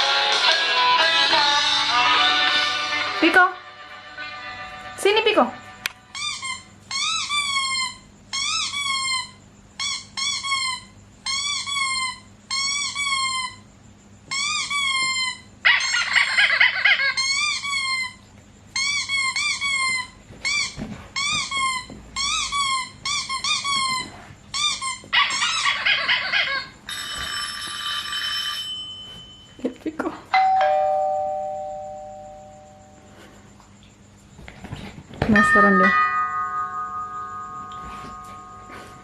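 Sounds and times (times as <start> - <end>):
dog whining cries: 6.1 - 13.6, 14.3 - 27.3.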